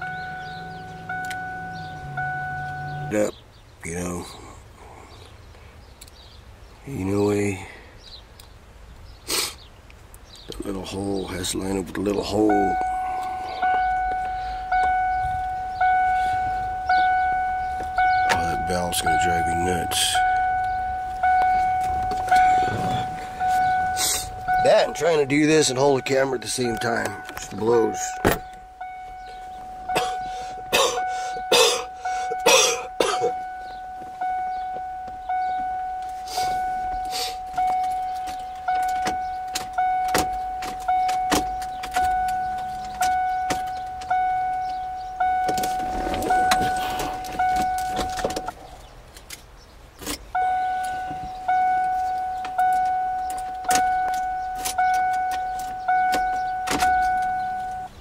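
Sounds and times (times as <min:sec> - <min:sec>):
car key-reminder bell dinging: 0:00.0 - 0:03.3, 0:12.0 - 0:48.7, 0:50.1 - 0:58.0
sharp clicks and knocks: 0:37.6 - 0:44.8, 0:45.4 - 0:57.8.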